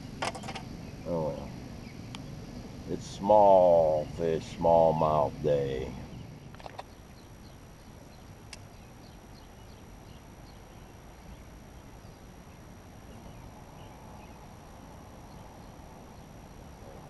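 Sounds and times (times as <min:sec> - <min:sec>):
low outdoor background noise: 0:00.0 - 0:17.0
faint light ticks: 0:08.5 - 0:08.7.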